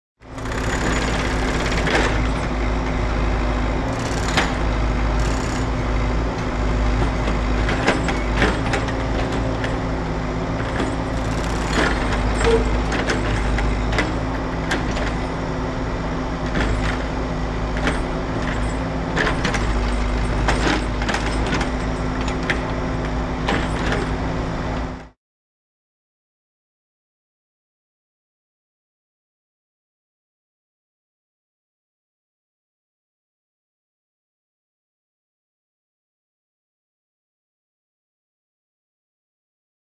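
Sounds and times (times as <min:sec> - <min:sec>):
construction machinery rumbling: 0:00.2 - 0:25.1
metal clanks and knocks: 0:00.6 - 0:03.2, 0:03.8 - 0:15.6, 0:16.2 - 0:25.0.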